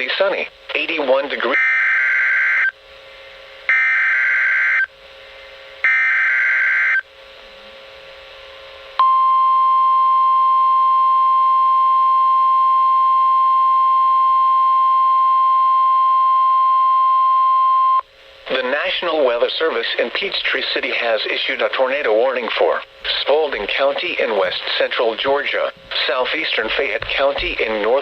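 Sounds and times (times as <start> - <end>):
steady high alarm tone: 1.5 - 2.8, 3.7 - 4.9, 5.8 - 7.0.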